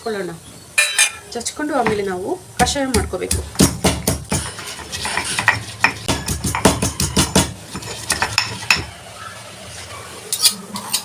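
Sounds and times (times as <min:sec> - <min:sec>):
pestle pounding in stone mortar: 0:01.8 - 0:09.0.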